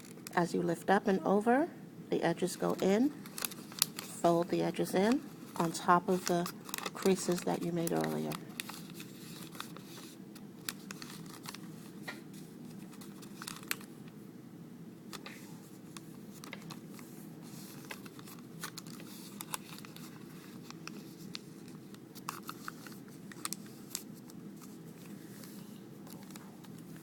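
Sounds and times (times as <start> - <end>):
paper crinkling and crackling: 2.5 - 13.9, 15.1 - 27.0.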